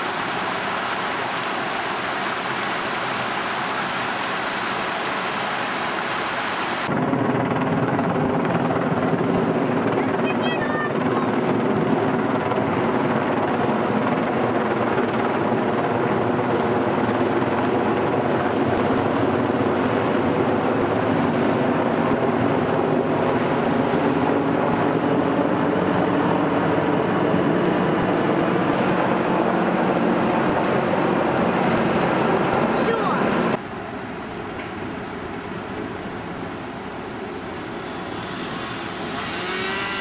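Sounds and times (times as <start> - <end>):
waterfall rushing: 0.0 - 6.9.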